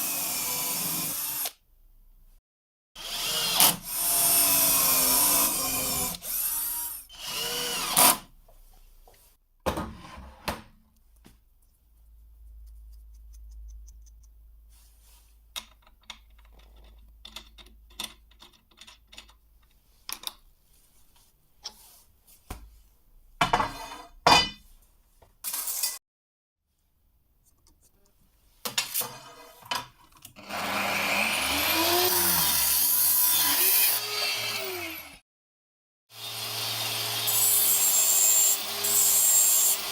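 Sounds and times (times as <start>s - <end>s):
clicks and knocks of handling: 15.5s - 20.5s.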